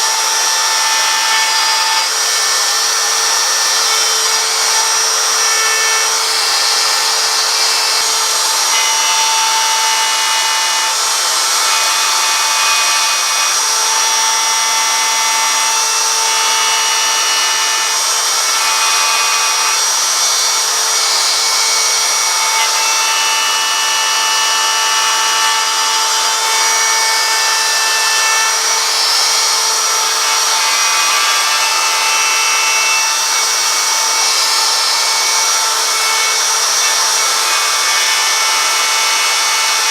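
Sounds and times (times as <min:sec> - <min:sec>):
power tool whining on wood: 0:00.0 - 0:39.9.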